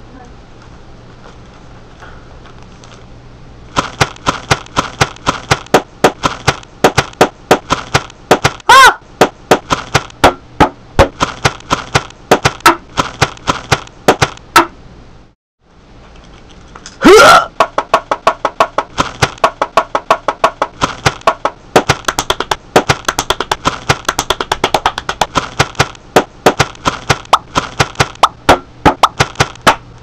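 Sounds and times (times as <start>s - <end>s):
rapid sharp clicks: 3.7s - 10.3s, 11.1s - 14.6s, 17.7s - 29.8s.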